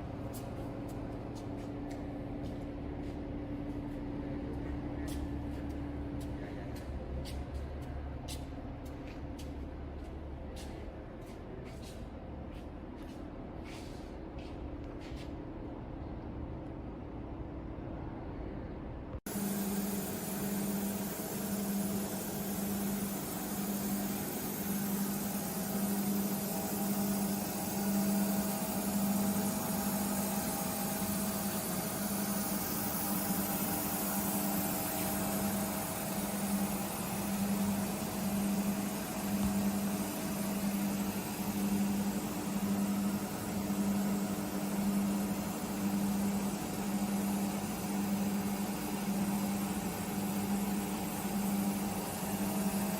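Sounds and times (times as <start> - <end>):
lathe machine hum: 19.3 - 52.9.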